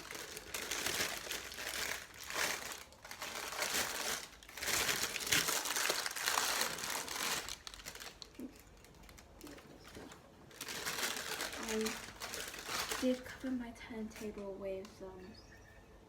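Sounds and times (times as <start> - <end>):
wrapping crinkling: 0.0 - 15.0.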